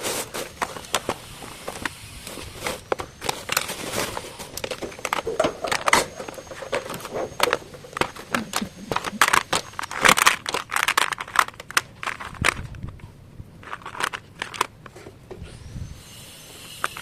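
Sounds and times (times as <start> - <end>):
packaging crinkling: 0.0 - 13.0, 13.6 - 14.8.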